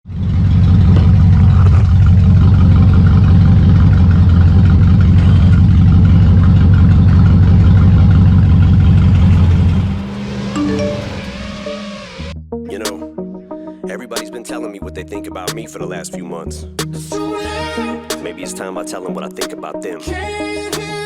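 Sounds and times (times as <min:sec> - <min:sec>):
car engine running: 0:00.0 - 0:12.4.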